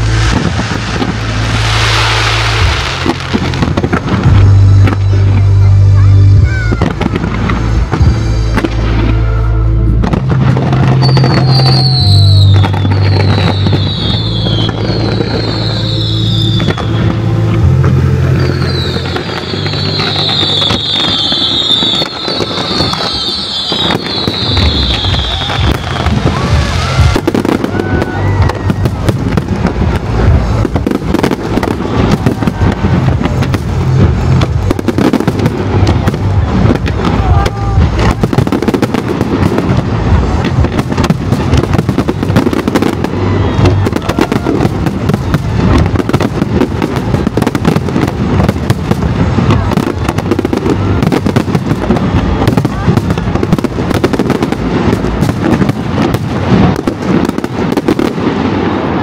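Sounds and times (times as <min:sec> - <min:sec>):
show music with heavy bass: 0:00.0 - 0:11.4
fireworks bangs and crackles: 0:00.0 - 0:59.0.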